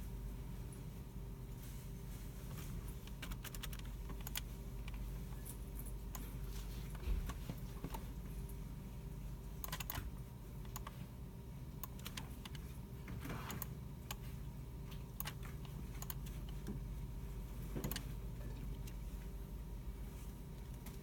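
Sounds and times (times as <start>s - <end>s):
steady low hum: 0.0s - 21.0s
keyboard keystrokes: 3.1s - 5.0s, 9.6s - 11.0s, 11.8s - 12.6s, 15.1s - 16.3s.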